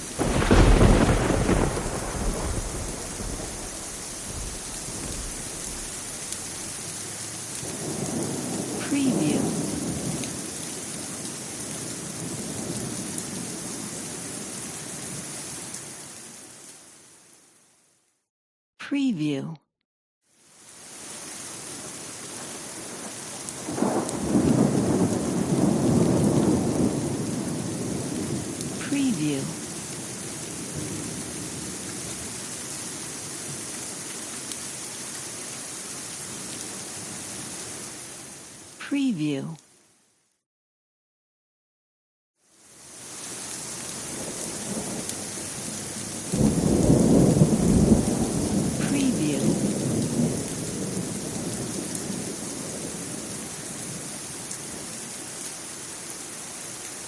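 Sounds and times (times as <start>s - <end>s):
hard rain downpour: 0.0s - 17.8s, 20.3s - 39.9s, 42.4s - 57.0s
thunder peal: 0.2s - 5.9s
rumble of thunder: 0.2s - 6.1s, 7.7s - 10.2s, 23.7s - 28.8s, 46.2s - 48.8s, 49.4s - 53.4s.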